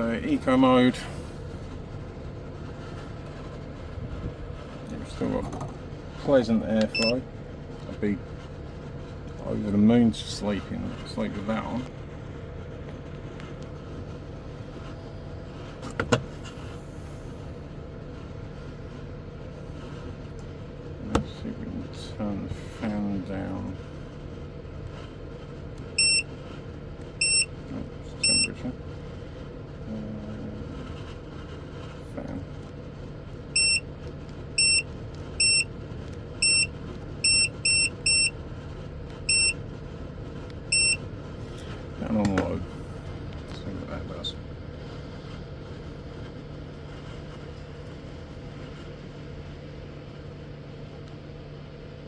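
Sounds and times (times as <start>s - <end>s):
air conditioner humming: 0.0s - 52.0s
air rushing from vents: 0.0s - 52.0s
short high beeps: 7.0s - 7.2s, 26.0s - 26.2s, 27.2s - 27.5s, 33.6s - 33.8s, 34.6s - 34.8s, 35.4s - 35.7s, 36.4s - 38.3s, 39.3s - 39.6s, 40.7s - 41.0s.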